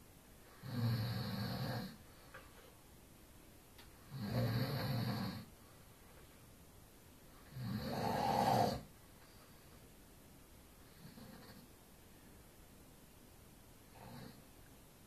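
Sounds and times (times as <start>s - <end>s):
man snoring: 0.6s - 2.0s, 4.1s - 5.5s, 7.4s - 8.9s, 13.9s - 14.4s.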